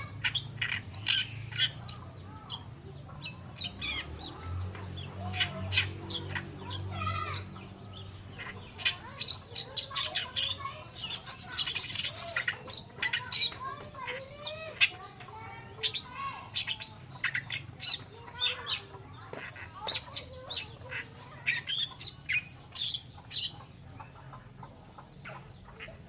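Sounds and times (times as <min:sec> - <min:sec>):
reed warbler singing: 0:05.0 - 0:13.8.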